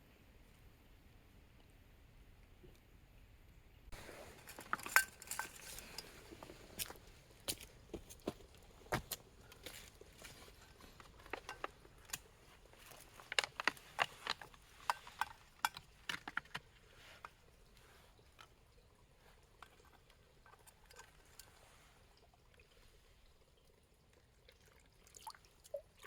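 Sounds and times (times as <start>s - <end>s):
sharp clicks and light knocks: 4.4s - 17.4s.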